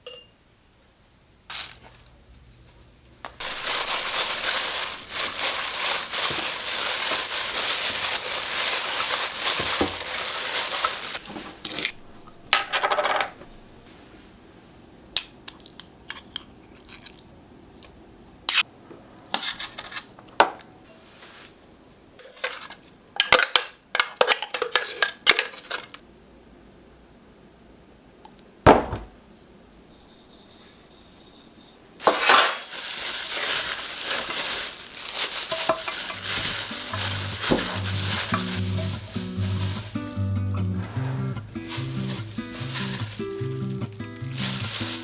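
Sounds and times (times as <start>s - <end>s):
bowls and utensils clinking: 3.4s - 12.0s, 30.1s - 40.0s, 41.6s - 45.0s.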